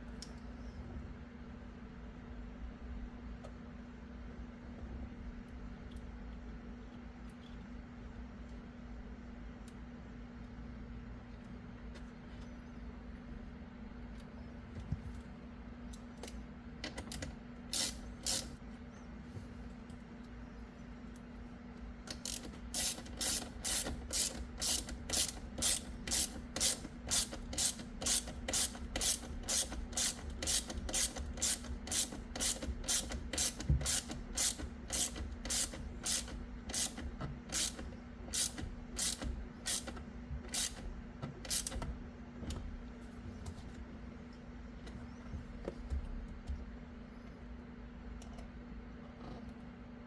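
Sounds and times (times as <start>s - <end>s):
hand ratchet clicking: 22.1s - 41.9s.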